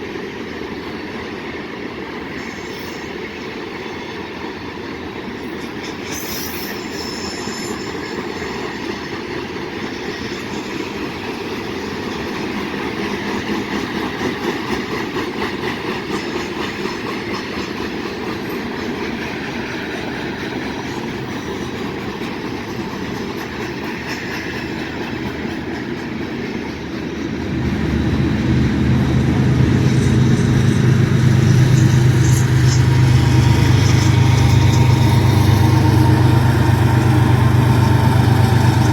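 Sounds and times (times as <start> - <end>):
train wheels clattering on rails: 0.0 - 38.9
locomotive engine drone: 25.1 - 38.9.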